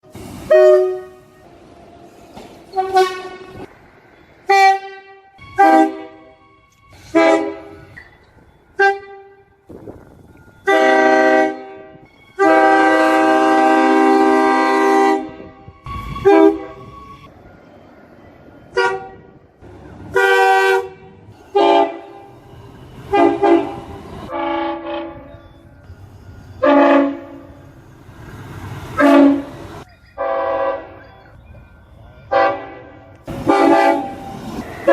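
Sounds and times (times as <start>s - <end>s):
train horn blasts: 0.0s - 1.4s, 2.7s - 3.7s, 4.4s - 8.0s, 8.8s - 9.6s, 10.6s - 17.3s, 18.7s - 19.4s, 20.1s - 22.4s, 23.0s - 25.4s, 26.6s - 27.6s, 29.0s - 31.0s, 32.3s - 34.9s.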